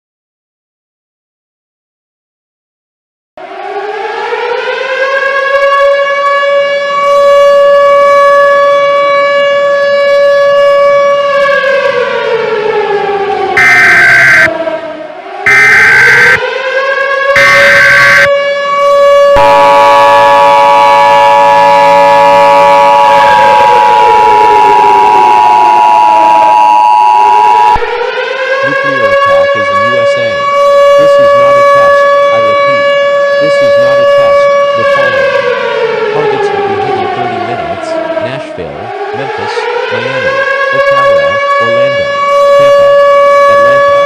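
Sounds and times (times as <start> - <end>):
civil defense siren wailing: 3.4 - 44.0
data tone bursts: 13.6 - 14.5, 15.5 - 16.4, 17.4 - 18.3, 19.4 - 21.6
two-tone attention signal: 13.6 - 14.5, 15.5 - 16.4, 17.4 - 18.3, 19.3 - 23.4, 24.8 - 27.8.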